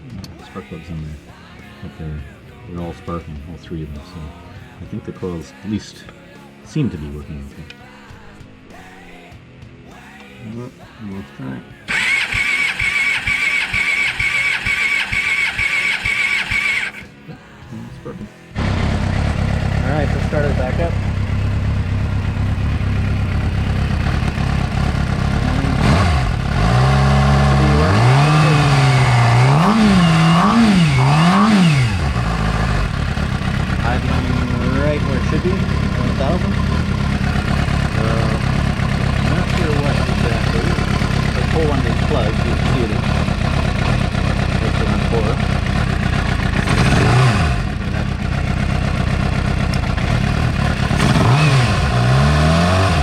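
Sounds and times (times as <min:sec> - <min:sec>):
motorcycle engine idling roughly: 0:11.9 - 0:17.0, 0:18.6 - 0:53.0
motorcycle engine revving: 0:11.9 - 0:17.2, 0:18.5 - 0:53.0.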